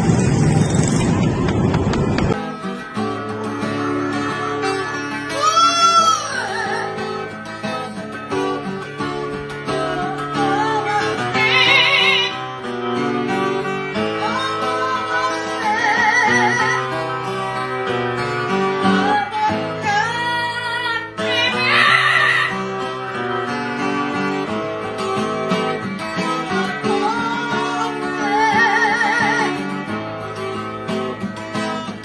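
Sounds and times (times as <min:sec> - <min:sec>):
acoustic guitar: 0:00.0 - 0:32.0
high wavering singing voice: 0:21.2 - 0:22.6.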